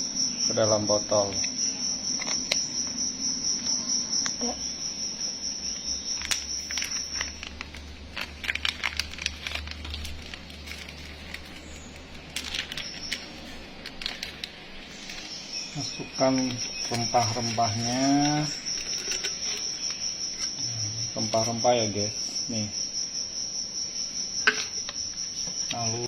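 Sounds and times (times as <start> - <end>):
high insect trill: 0.0 - 26.0
dried herbs crinkling: 5.7 - 20.6.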